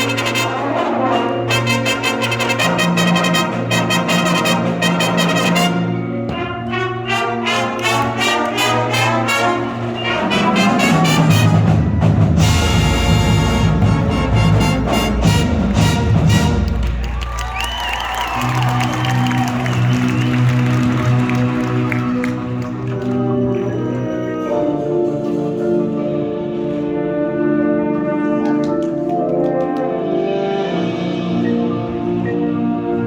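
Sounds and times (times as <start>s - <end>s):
marching band playing brass: 0.0s - 33.0s.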